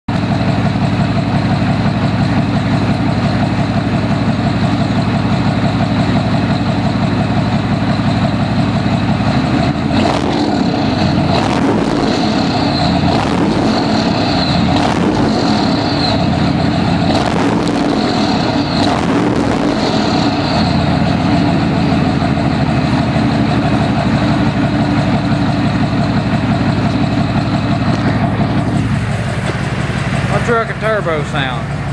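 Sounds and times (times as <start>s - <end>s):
truck engine revving: 0.0s - 31.9s
turbo whistle: 11.4s - 16.4s.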